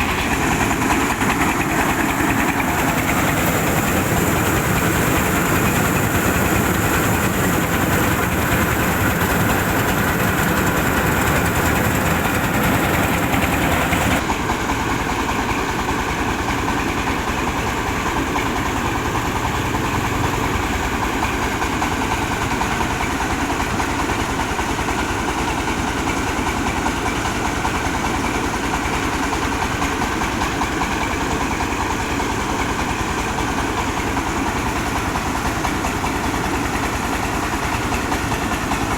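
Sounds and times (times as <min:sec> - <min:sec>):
diesel engine running: 0:00.0 - 0:25.7.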